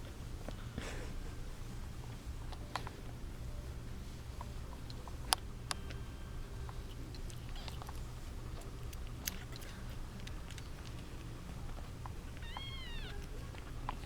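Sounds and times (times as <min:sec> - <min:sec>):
steady low hum: 0:00.0 - 0:14.0
small clicks and rustles: 0:06.7 - 0:14.0
kittens squeaking: 0:07.3 - 0:08.2, 0:12.2 - 0:14.0.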